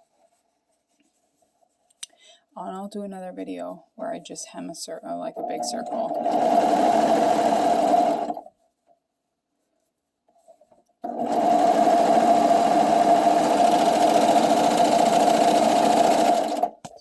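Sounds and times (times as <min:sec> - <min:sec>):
sewing machine stitching: 0:05.4 - 0:08.5, 0:11.0 - 0:16.8.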